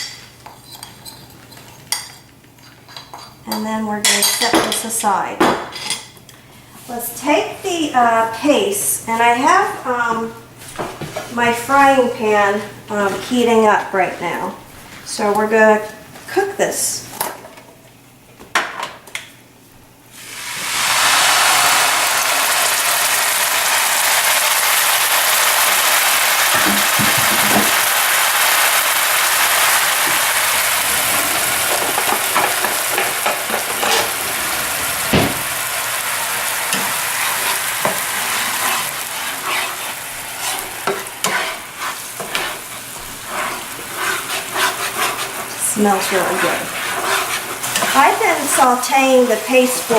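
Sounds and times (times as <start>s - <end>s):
paste sizzling in hot pan: 20.1s - 49.9s
spatula scraping and tapping: 31.7s - 34.2s, 37.8s - 48.3s.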